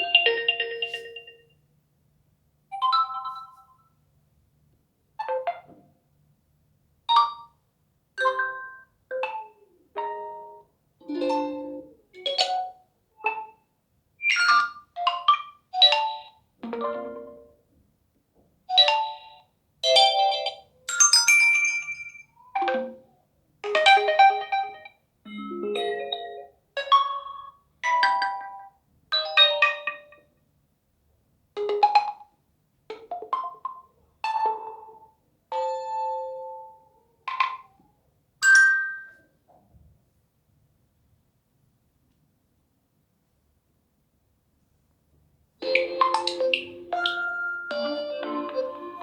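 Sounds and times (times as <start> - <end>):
phone ringtone chiming notes: 0.0 - 1.4, 21.0 - 23.0, 45.6 - 49.0.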